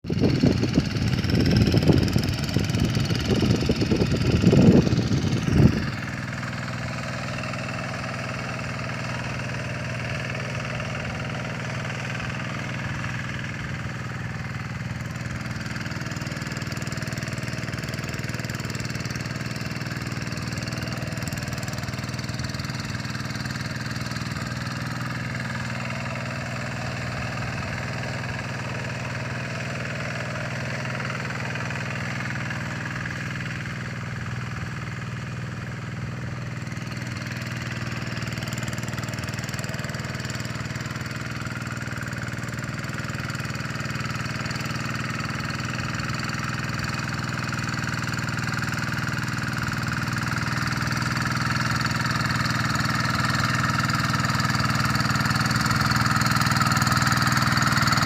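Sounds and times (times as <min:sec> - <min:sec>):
small engine running: 0:00.0 - 0:58.0
loud irregular low rumble: 0:00.1 - 0:16.7.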